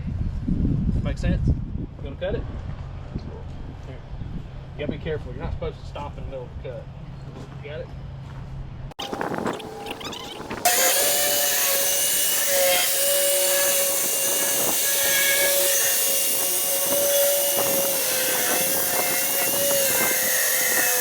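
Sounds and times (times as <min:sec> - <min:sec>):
circular saw whining: 0:09.0 - 0:21.0.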